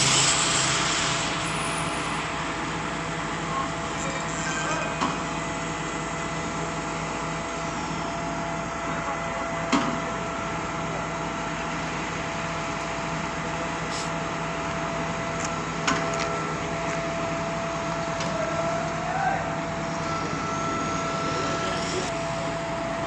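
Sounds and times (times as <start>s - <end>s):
pump machinery humming: 0.0s - 23.0s.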